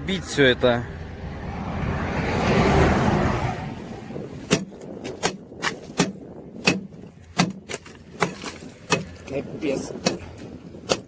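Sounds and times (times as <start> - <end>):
passing vehicle rushing: 0.0 - 4.8.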